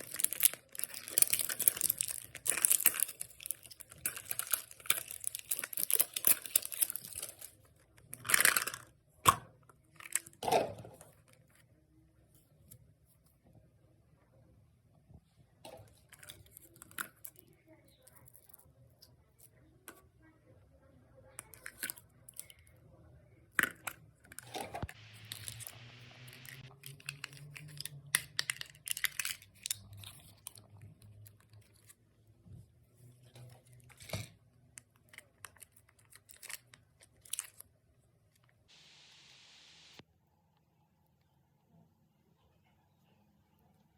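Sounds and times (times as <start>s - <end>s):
wrapper tearing and crinkling: 0.0s - 7.5s, 24.5s - 30.6s.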